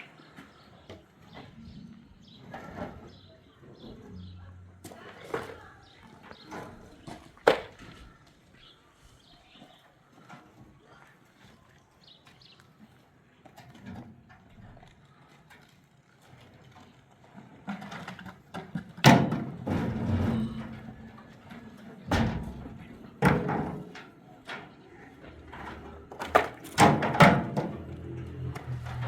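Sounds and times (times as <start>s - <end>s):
knocks and bangs: 19.0s - 21.1s, 22.1s - 24.1s, 26.3s - 28.0s.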